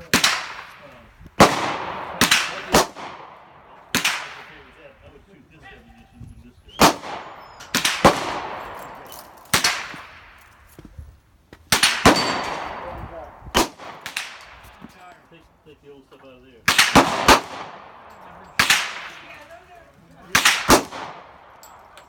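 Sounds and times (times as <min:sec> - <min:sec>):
gunshots with echoing tail: 0:00.0 - 0:04.8, 0:06.8 - 0:10.4, 0:11.7 - 0:14.9, 0:16.6 - 0:19.4, 0:20.2 - 0:22.0.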